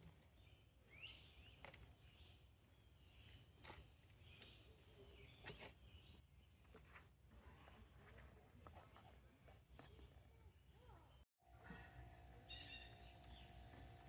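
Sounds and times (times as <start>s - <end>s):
faint bird calls and chirps: 12.5s - 14.0s.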